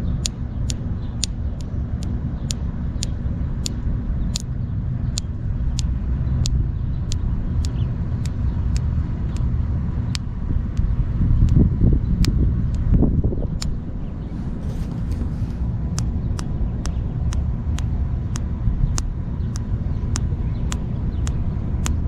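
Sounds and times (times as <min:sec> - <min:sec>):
low vehicle rumble: 0:00.0 - 0:22.0
thumb joint cracking: 0:05.1 - 0:09.5, 0:12.2 - 0:13.9, 0:14.6 - 0:22.0.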